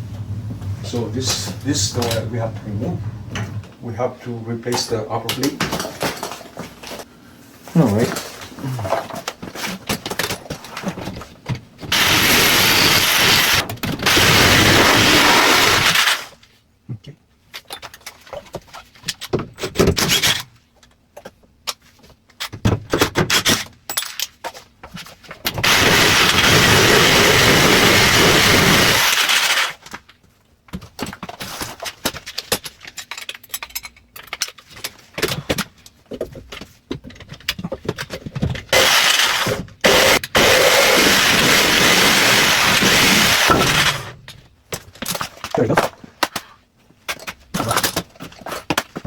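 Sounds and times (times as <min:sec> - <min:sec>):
power tool running: 0:11.8 - 0:16.3, 0:25.6 - 0:29.8, 0:38.8 - 0:44.2.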